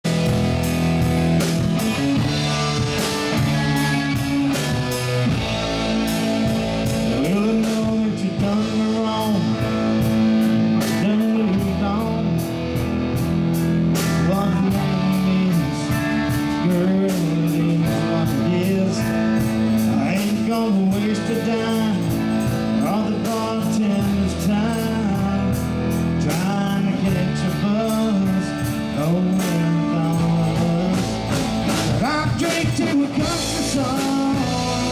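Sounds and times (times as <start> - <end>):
bass guitar: 0.0 - 34.9
electric guitar bending notes: 0.0 - 34.9
steady drum beat: 0.0 - 34.9.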